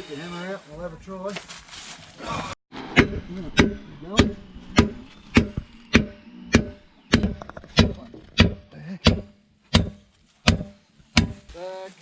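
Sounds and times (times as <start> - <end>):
hammer striking metal wheel rim: 3.0 - 11.5.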